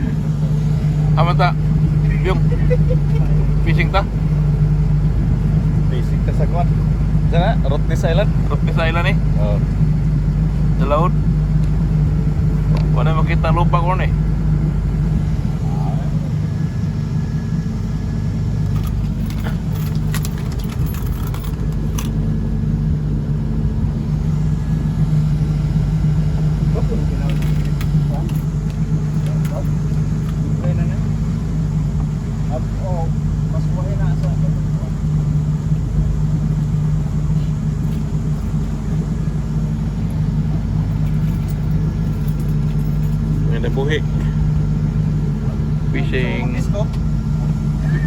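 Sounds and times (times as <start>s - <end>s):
boat engine running: 0.0s - 48.0s
sharp clinks and rattles: 18.5s - 22.4s, 26.7s - 30.8s, 36.5s - 39.0s, 39.9s - 45.0s.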